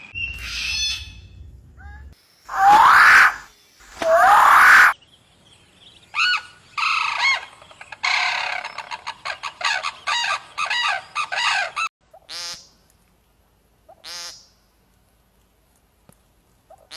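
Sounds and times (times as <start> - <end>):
bird harsh calls: 6.1 - 12.7.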